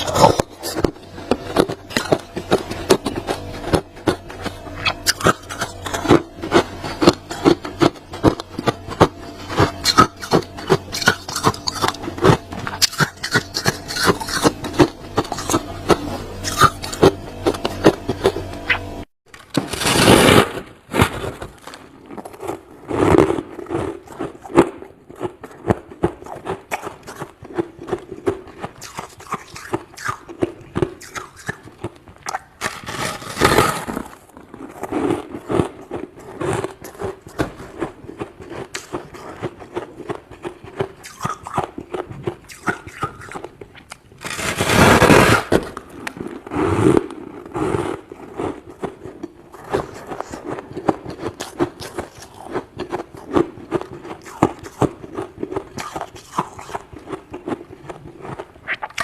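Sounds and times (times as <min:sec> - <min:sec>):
frost scraping: 0:00.0 - 0:19.0, 0:30.8 - 0:43.6, 0:44.2 - 0:57.7.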